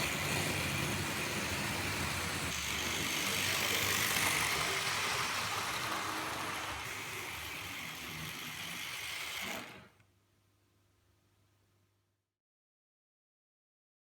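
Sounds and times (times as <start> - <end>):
model train motors whirring: 0.0 - 10.0.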